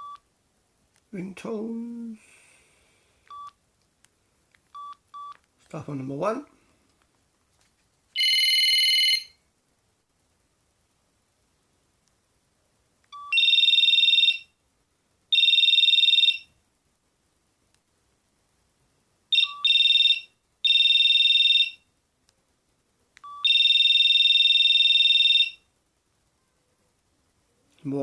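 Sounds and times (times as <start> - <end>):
trilling phone ringtone: 8.2 - 9.4, 13.2 - 14.5, 15.3 - 16.5, 19.3 - 21.8, 23.3 - 25.6.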